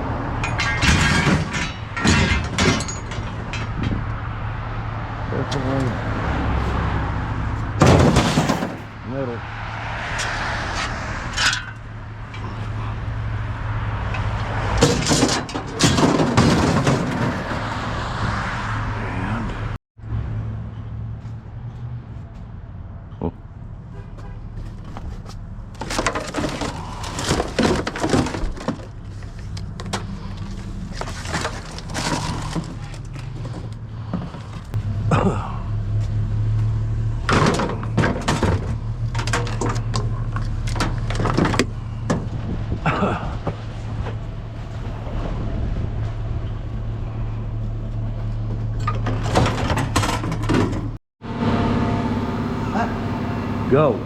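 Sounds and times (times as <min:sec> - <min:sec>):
scrap metal knocking and rattling: 0:00.4 - 0:04.2, 0:07.7 - 0:09.0, 0:11.3 - 0:12.7, 0:14.1 - 0:17.9, 0:24.6 - 0:34.8, 0:37.2 - 0:42.4, 0:47.9 - 0:51.0
low engine hum: 0:29.0 - 0:54.0.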